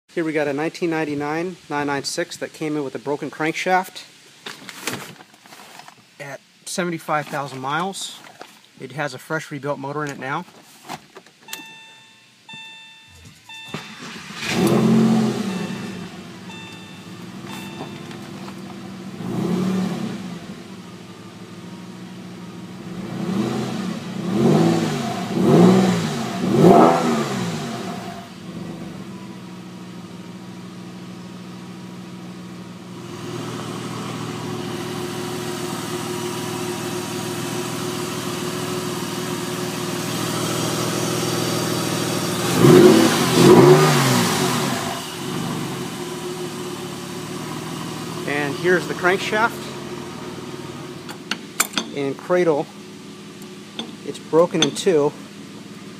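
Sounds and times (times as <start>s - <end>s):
car engine starting and idling: 11.3s - 55.9s
engine throttle blips: 11.5s - 55.9s.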